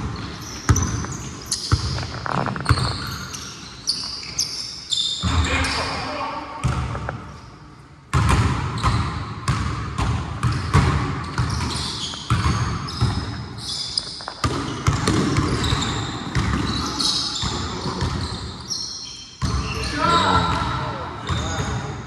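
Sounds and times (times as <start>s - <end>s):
basketball dribbling: 0.0s - 3.3s, 8.1s - 13.5s, 14.3s - 18.4s
sneakers squeaking on court: 0.0s - 22.0s.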